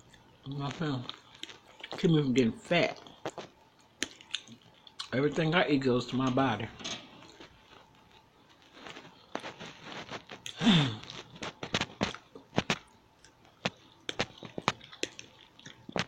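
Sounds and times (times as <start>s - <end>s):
lip smacks and chewing: 0.0s - 2.1s, 3.0s - 5.2s, 10.4s - 16.0s
person humming mmm: 10.5s - 11.2s.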